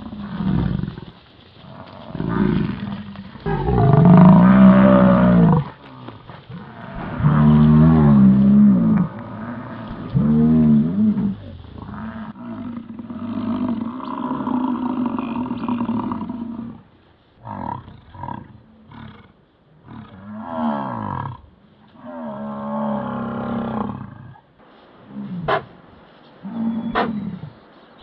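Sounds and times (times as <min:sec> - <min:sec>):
bison bellowing: 0:01.6 - 0:16.7.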